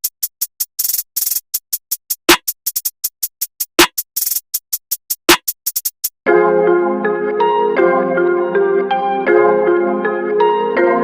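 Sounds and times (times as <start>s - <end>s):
rapid hi-hat ticks: 0.0s - 6.2s.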